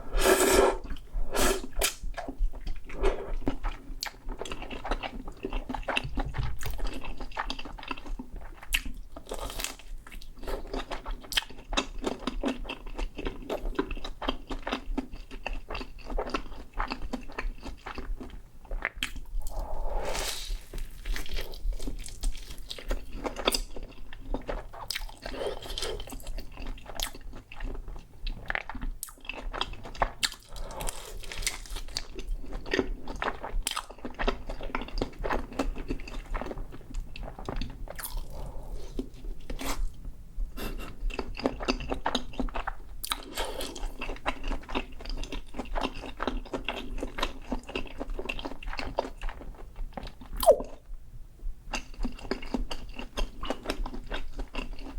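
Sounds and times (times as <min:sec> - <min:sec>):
crunchy biting and chewing: 0:28.5 - 0:39.9.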